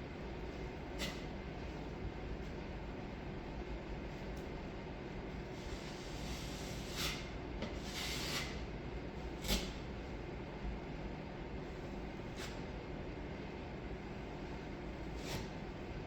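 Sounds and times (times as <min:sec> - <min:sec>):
low background hum: 0:00.0 - 0:16.0
taping knife scraping compound: 0:05.7 - 0:08.7, 0:09.4 - 0:09.8.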